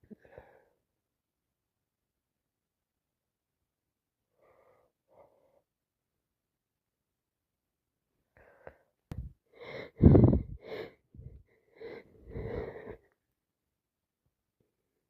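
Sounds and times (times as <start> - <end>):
woman breathing: 8.3 - 13.2.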